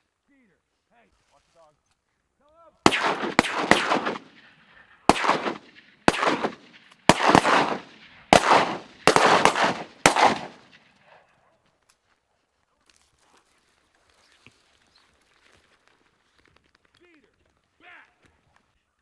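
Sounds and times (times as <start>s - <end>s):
shotgun shots echoing: 2.9s - 4.4s, 5.1s - 10.7s.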